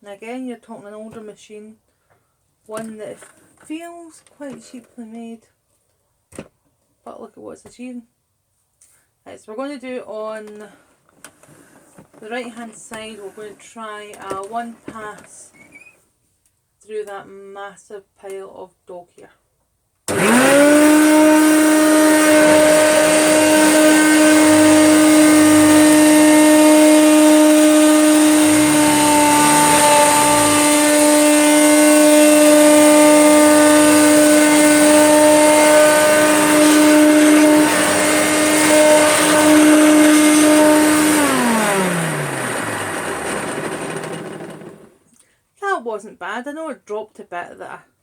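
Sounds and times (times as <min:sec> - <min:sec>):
vacuum cleaner motor whine: 0:20.1 - 0:45.0.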